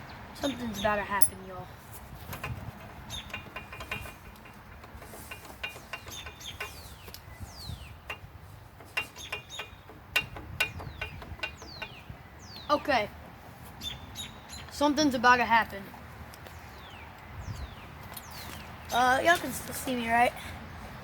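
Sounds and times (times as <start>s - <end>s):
ratchet clicks: 2.3s - 7.3s, 8.0s - 12.0s.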